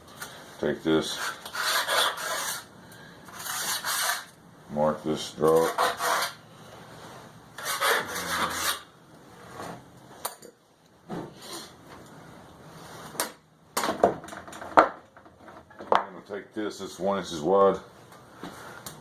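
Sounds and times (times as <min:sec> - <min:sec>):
marker scratching across metal: 0:01.1 - 0:02.7, 0:03.3 - 0:04.3, 0:05.5 - 0:06.4, 0:07.6 - 0:08.9.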